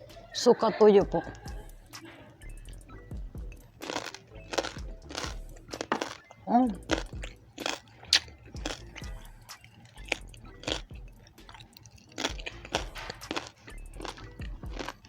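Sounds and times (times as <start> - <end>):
person chewing crunchy food: 3.0 - 15.0.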